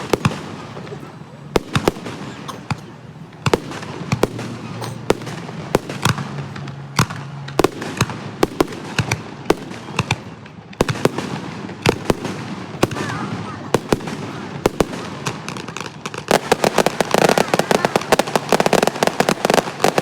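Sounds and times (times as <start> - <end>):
fireworks bursting: 0.0 - 20.0.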